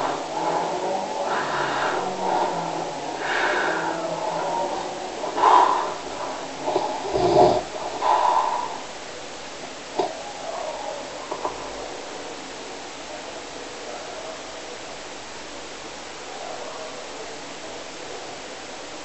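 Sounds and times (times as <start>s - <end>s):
rough snoring: 0.0s - 8.8s.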